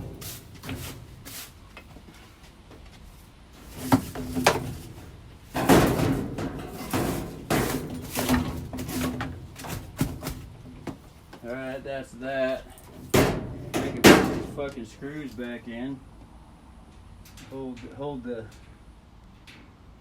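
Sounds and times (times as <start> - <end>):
knocks and clatter on washer: 5.6 - 11.0.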